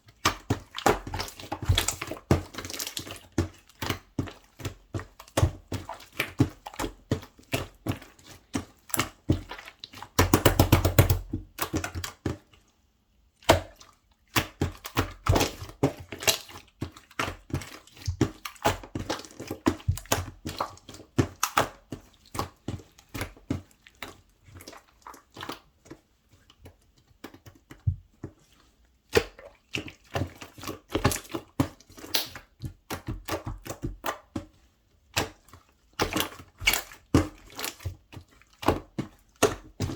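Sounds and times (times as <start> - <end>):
slime clicking and popping: 32.0 - 32.4.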